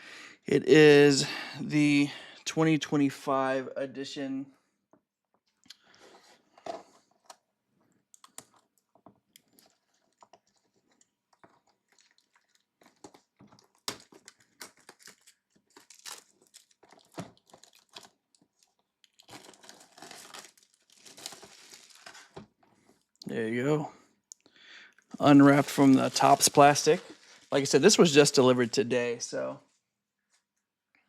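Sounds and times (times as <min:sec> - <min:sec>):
plastic wrap crinkling and tearing: 0:09.4 - 0:22.5, 0:25.2 - 0:28.4.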